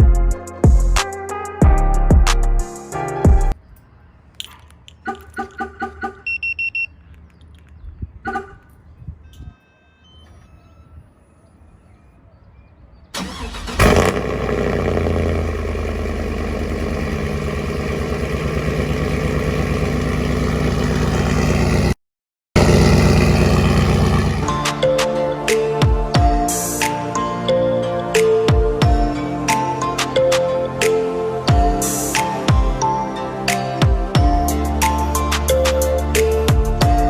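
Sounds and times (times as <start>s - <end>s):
quick electronic beeps: 5.0s - 7.0s
truck engine starting and idling: 13.2s - 22.0s, 22.6s - 24.6s.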